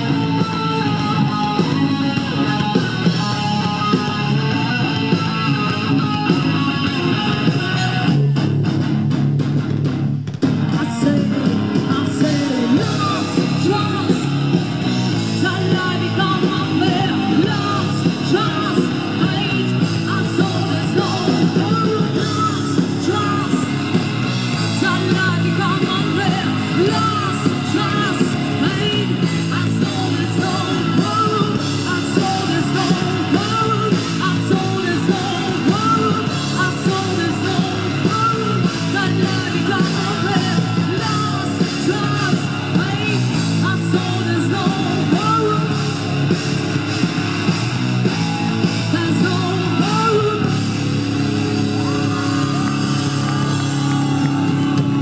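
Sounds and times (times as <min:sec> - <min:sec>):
drums: 0:00.0 - 0:55.0
live rock band playing: 0:00.0 - 0:55.0
shouted sung vocal: 0:15.2 - 0:24.0, 0:24.6 - 0:45.8, 0:48.1 - 0:55.0.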